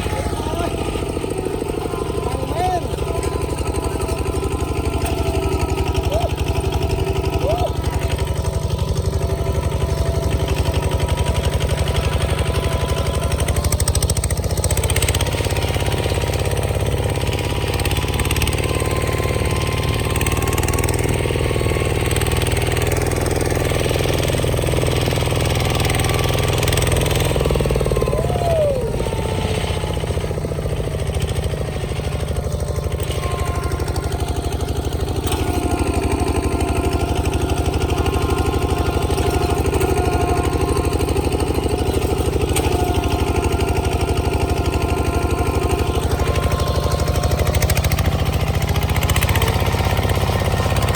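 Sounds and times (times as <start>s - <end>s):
bulldozer engine chugging: 0.0s - 50.9s.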